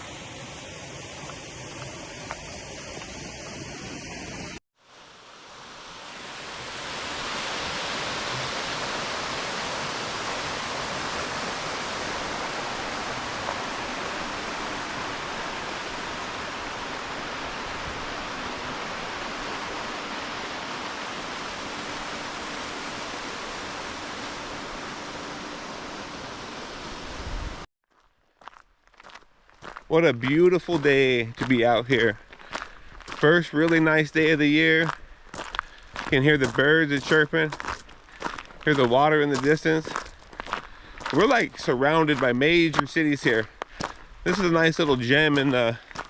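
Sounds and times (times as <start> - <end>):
creek water rushing: 0.0 - 27.7.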